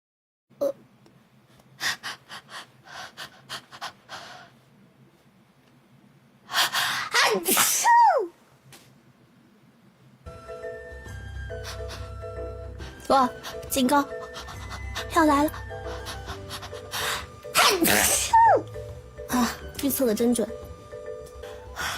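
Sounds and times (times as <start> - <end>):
woman sneezing: 7.1 - 8.3, 17.5 - 18.6
woman gasping in-breaths: 12.8 - 17.4, 21.5 - 21.9.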